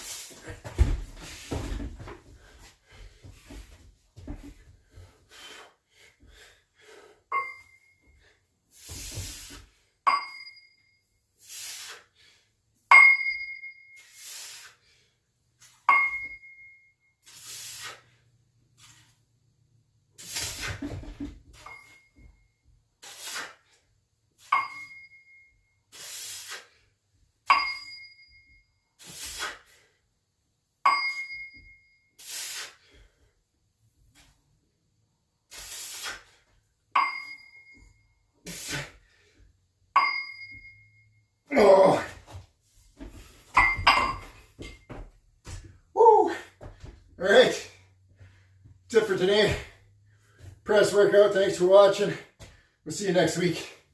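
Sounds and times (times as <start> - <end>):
metal dumbbells clinking: 12.9 - 14.0, 27.5 - 28.5, 37.0 - 37.8, 43.5 - 44.8
sharp exhaled breaths: 17.2 - 18.4, 25.9 - 26.8, 29.0 - 30.0, 32.2 - 33.3, 35.5 - 36.5, 38.4 - 39.4.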